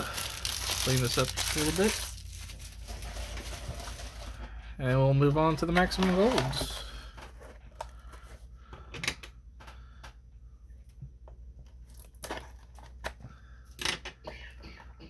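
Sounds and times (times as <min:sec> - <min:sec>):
plastic and foil wrappers crinkling: 0:00.0 - 0:04.6, 0:05.4 - 0:08.1.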